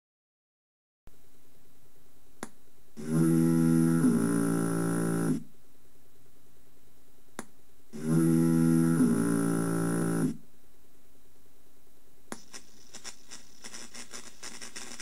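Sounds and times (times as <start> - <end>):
steady electronic hiss: 11.2 - 15.0.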